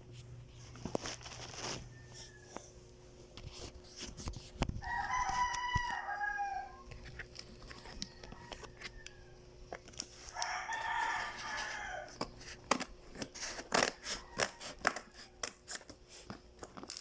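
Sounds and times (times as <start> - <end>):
rooster crowing: 1.7 - 2.8, 4.8 - 6.9, 7.6 - 9.6, 10.3 - 12.2, 13.8 - 15.5.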